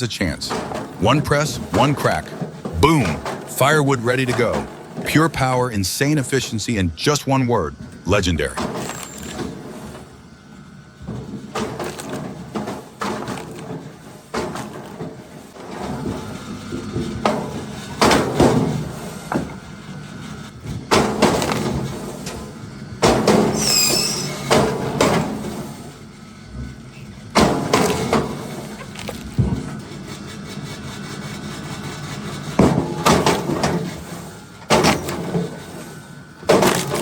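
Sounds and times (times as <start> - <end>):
log splitter machine running: 0.0 - 37.0
high squeal: 23.5 - 24.5
wood pieces dropping: 36.4 - 37.0.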